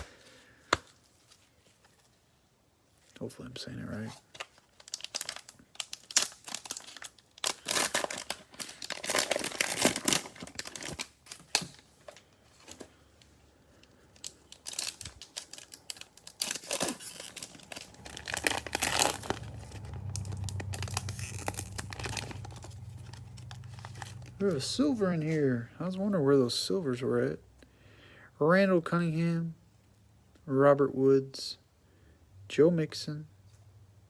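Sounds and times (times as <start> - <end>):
low steady hum: 0.0 - 28.4
cellophane wrapper tearing and crinkling: 4.2 - 12.8, 13.9 - 25.0.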